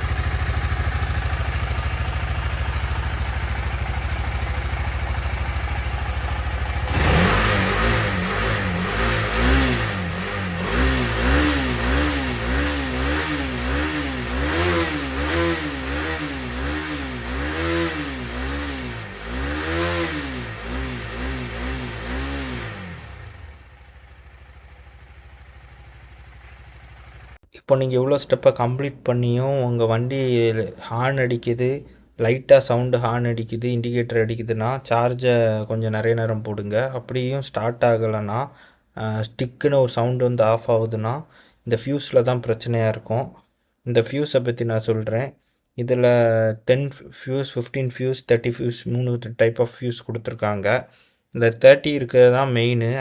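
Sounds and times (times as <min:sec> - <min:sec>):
motorcycle engine idling and revving: 0:00.0 - 0:27.4.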